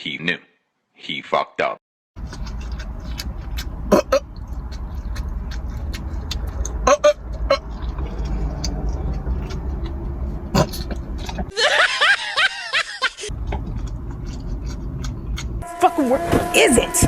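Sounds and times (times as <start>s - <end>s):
chewing and mouth clicks: 2.2s - 11.5s, 13.3s - 15.6s
steady low rumble: 2.2s - 11.5s, 13.3s - 15.7s
laughter: 11.5s - 13.3s.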